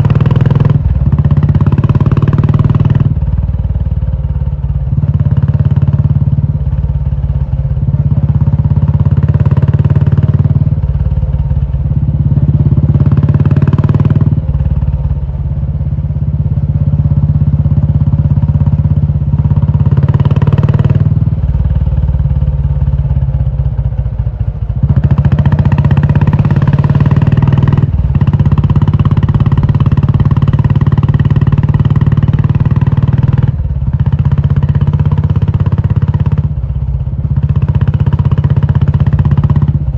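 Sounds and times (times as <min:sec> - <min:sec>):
motorcycle engine with loud exhaust: 0:00.0 - 0:39.9.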